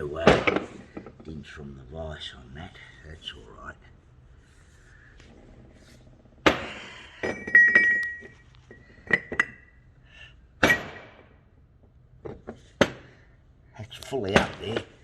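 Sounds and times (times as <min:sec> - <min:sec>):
heavy metal parts clanking: 0:06.4 - 0:09.7.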